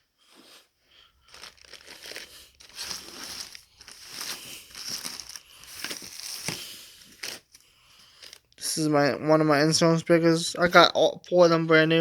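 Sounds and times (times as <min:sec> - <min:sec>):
packaging crinkling and rustling: 0:01.2 - 0:08.6.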